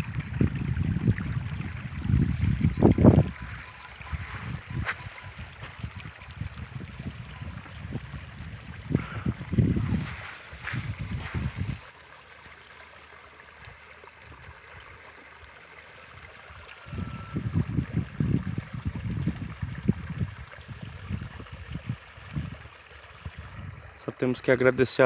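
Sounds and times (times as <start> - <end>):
wind buffeting microphone: 0.0 - 11.9, 16.8 - 23.9.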